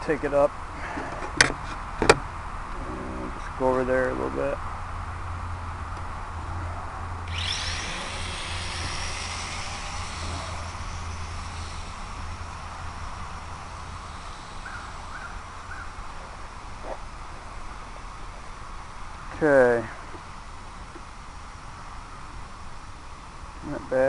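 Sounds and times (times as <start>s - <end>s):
drone motors whining: 6.5s - 18.5s.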